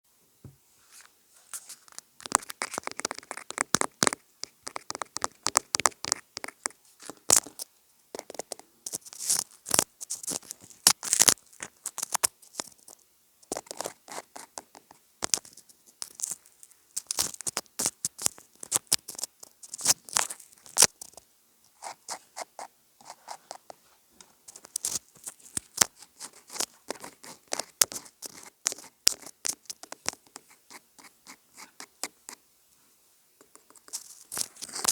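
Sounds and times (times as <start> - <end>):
clicking and scratching: 24.5 - 32.2, 33.4 - 34.9.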